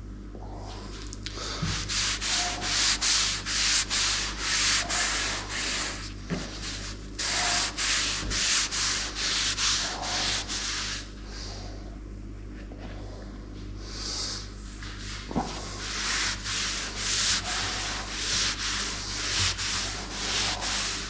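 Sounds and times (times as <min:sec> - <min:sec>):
hand rubbing wooden table: 0:01.6 - 0:11.0, 0:14.7 - 0:21.0.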